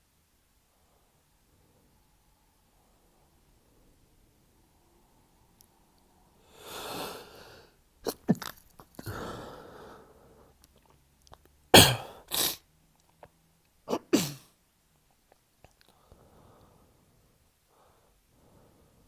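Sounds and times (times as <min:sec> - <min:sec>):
man gasping breaths: 0:09.0 - 0:10.4, 0:16.0 - 0:19.0
man stifled sneezes: 0:11.8 - 0:12.6, 0:13.9 - 0:14.5.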